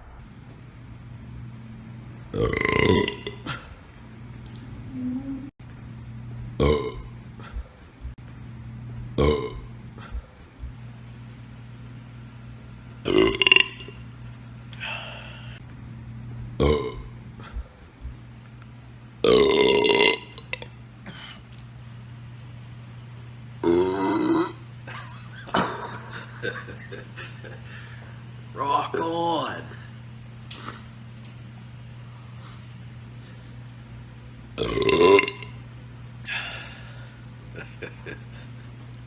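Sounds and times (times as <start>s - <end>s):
steady low hum: 0.0s - 39.0s
man belching: 2.3s - 3.7s, 6.6s - 7.5s, 9.2s - 10.1s, 13.0s - 14.0s, 16.6s - 17.1s, 19.2s - 20.8s, 23.6s - 24.6s, 34.6s - 35.6s.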